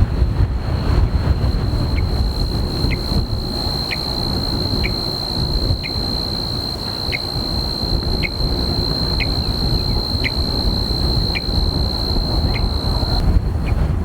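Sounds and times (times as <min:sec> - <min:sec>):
high insect trill: 0:01.4 - 0:13.2.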